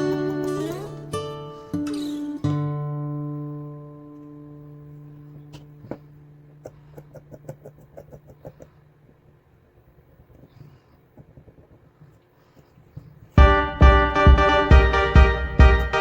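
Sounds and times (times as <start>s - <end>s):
acoustic guitar music: 0.0s - 6.6s, 13.4s - 16.0s.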